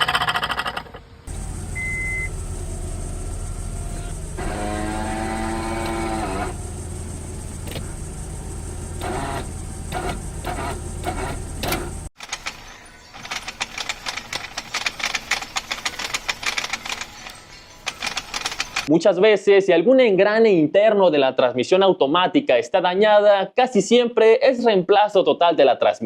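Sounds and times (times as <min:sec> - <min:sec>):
transmission drone with groaning whine: 0:01.3 - 0:12.1
gearbox rattling clicks and knocks: 0:09.0 - 0:18.9.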